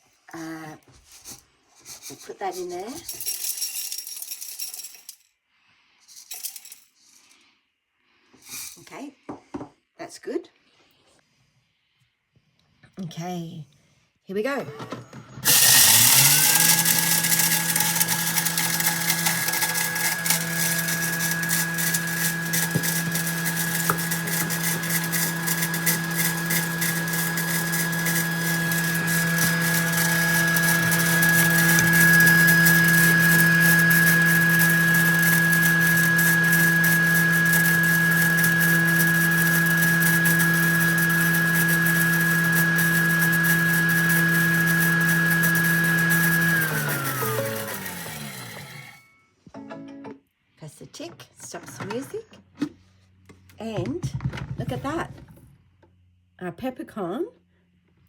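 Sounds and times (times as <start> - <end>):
blender motor whining: 15.4 - 49.1.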